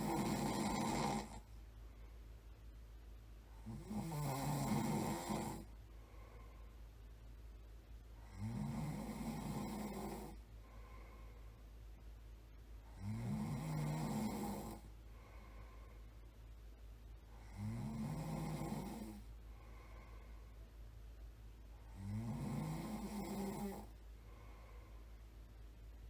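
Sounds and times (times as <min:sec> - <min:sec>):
person snoring: 0:00.0 - 0:01.5, 0:03.6 - 0:05.7, 0:08.2 - 0:10.4, 0:12.9 - 0:14.9, 0:17.4 - 0:19.3, 0:21.9 - 0:23.9
soft breaths: 0:00.0 - 0:03.8, 0:04.4 - 0:17.6, 0:18.3 - 0:26.0
steady low hum: 0:00.0 - 0:26.0.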